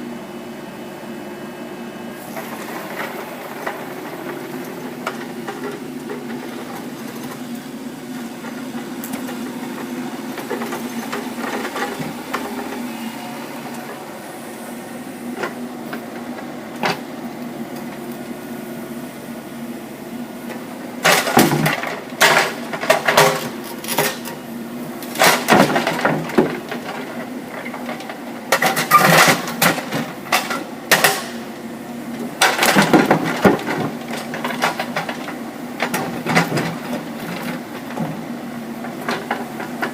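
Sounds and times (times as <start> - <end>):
diesel engine running: 0.0 - 39.9
bucket scraping and clattering: 8.4 - 12.9, 32.4 - 38.2.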